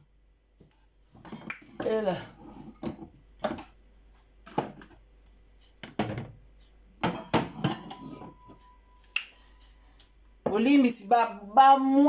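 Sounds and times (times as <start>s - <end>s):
kitchen containers clattering: 7.0s - 8.6s.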